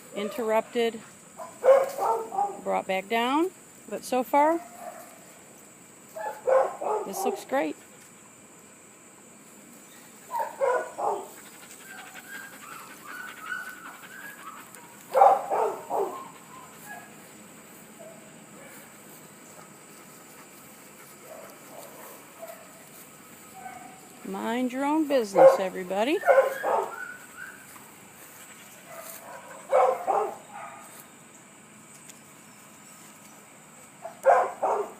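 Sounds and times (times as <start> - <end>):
dog barking: 1.4 - 2.6, 4.6 - 5.2, 6.2 - 7.4, 10.3 - 11.4, 12.7 - 17.2, 21.2 - 22.7, 23.6 - 24.0, 25.3 - 27.6, 28.9 - 30.9, 34.0 - 34.9
dog whining: 10.4 - 17.2, 26.2 - 27.7.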